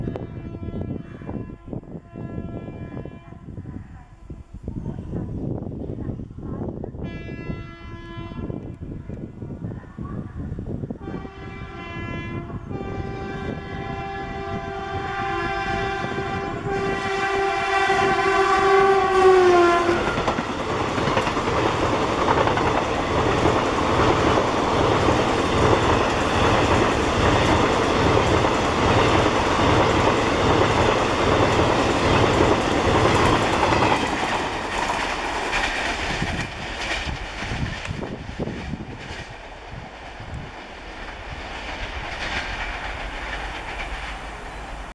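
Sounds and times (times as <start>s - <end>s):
two-tone locomotive horn: 0.0s - 3.6s, 7.0s - 8.8s, 11.0s - 20.9s
train coaches rumbling past: 8.4s - 44.9s.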